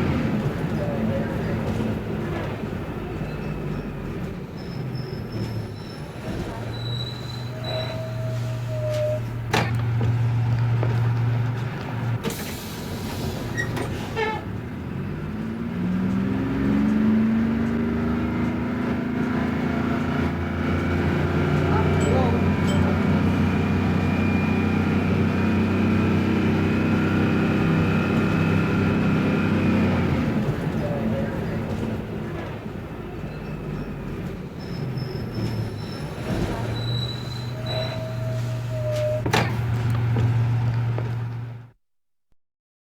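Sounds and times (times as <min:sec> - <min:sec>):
bus engine revving: 0:00.0 - 0:41.8
air brake hiss: 0:12.3 - 0:13.6
high-pitched squeals: 0:34.6 - 0:39.3.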